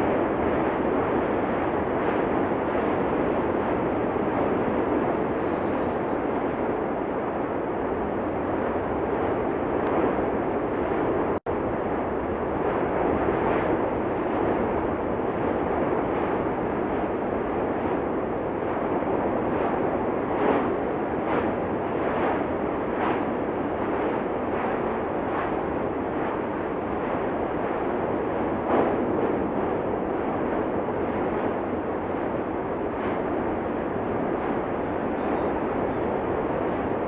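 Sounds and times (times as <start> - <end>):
volcanic blasts: 0.0 - 37.0
volcano eruption rushing: 0.0 - 37.0.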